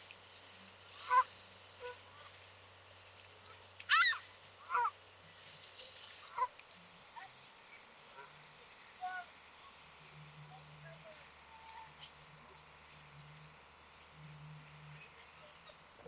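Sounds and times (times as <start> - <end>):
geese honking: 0.8 - 2.4, 3.4 - 5.0, 6.2 - 6.6.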